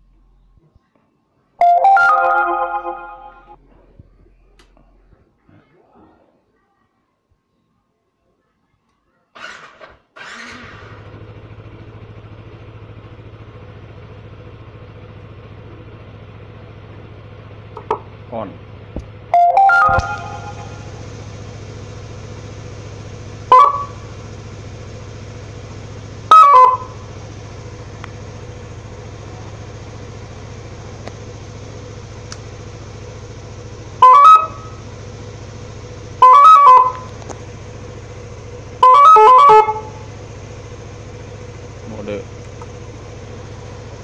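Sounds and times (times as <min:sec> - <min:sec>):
multi-note horn blasts: 0:01.6 - 0:03.6, 0:19.4 - 0:21.2, 0:23.4 - 0:24.2, 0:26.3 - 0:27.2, 0:33.9 - 0:35.0, 0:36.1 - 0:37.2, 0:38.8 - 0:40.1
steady low hum: 0:15.9 - 0:44.0.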